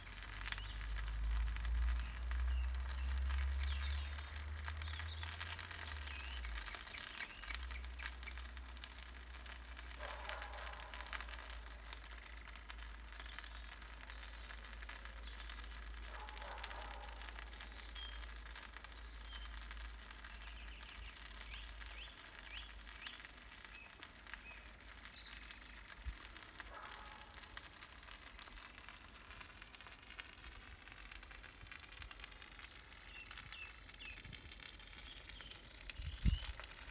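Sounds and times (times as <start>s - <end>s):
bonfire crackling and popping: 0.0s - 36.9s
birds chirping: 3.4s - 5.2s, 6.0s - 9.2s.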